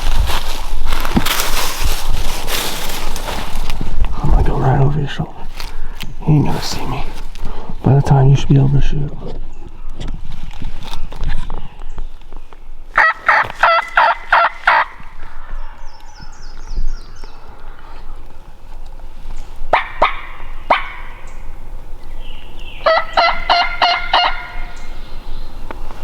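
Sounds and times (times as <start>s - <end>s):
turkey gobbling: 12.9s - 15.5s, 19.7s - 21.4s, 22.8s - 25.0s.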